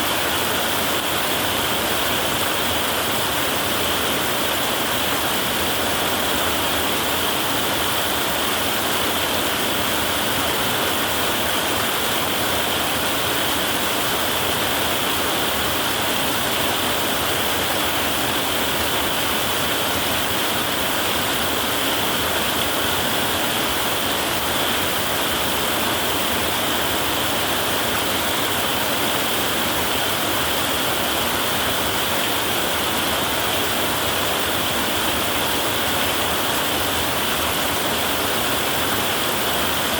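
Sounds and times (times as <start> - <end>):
heavy rain on a tin roof: 0.0 - 39.9.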